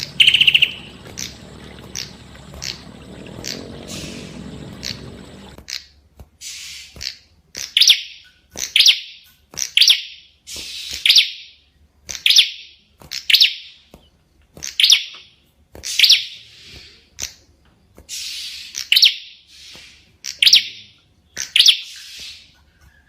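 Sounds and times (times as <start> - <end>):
songbird high-pitched chirps: 0.0 - 5.6, 18.1 - 22.5.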